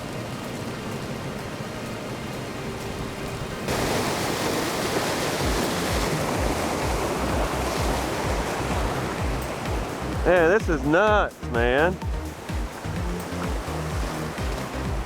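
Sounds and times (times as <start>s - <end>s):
water pouring over waterfall: 0.0s - 10.6s.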